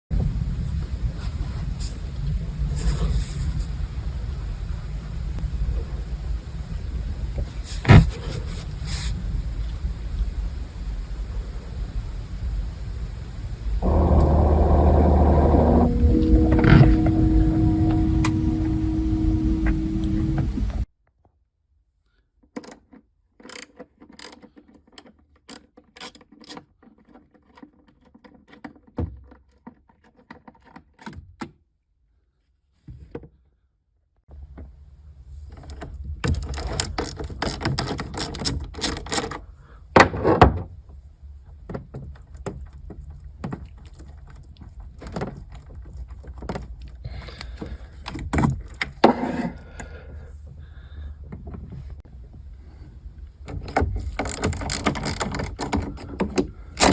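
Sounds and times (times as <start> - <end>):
steady low rumble: 0.1 - 20.9.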